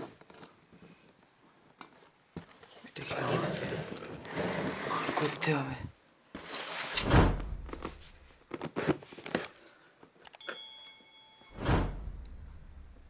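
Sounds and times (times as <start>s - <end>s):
cardboard rustling and knocking: 6.9s - 9.4s.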